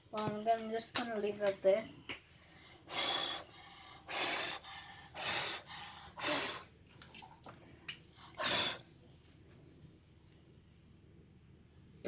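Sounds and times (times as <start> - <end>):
person breathing heavily: 2.4 - 6.7.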